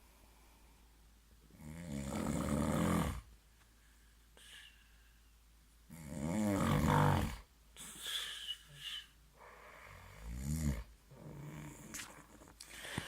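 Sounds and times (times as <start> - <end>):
man snoring: 1.5 - 3.3, 5.9 - 7.4, 9.9 - 12.0
soft breathing: 3.5 - 5.4, 7.8 - 10.2, 11.1 - 13.0.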